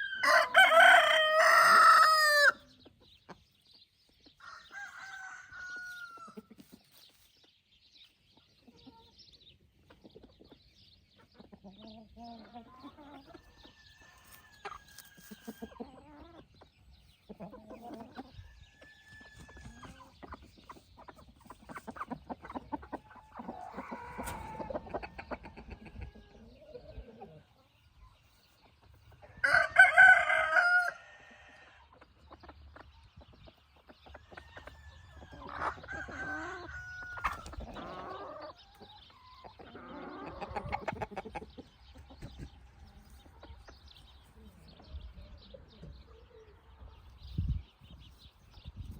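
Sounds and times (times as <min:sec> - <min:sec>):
rooster crowing loudly: 0:00.0 - 0:02.6, 0:04.4 - 0:06.3, 0:29.4 - 0:31.7, 0:35.9 - 0:37.4
hens clucking: 0:00.0 - 0:07.3, 0:08.0 - 0:48.9.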